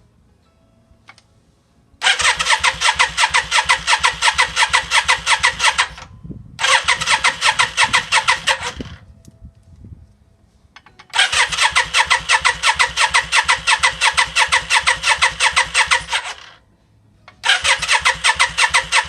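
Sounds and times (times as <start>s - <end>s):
motorcycle engine cranking: 2.0s - 9.0s, 10.8s - 16.6s, 17.4s - 19.0s.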